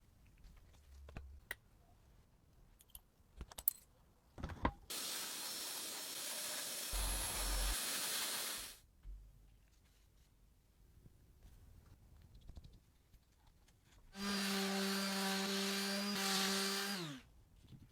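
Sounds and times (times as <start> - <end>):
steady hiss: 4.9 - 8.8.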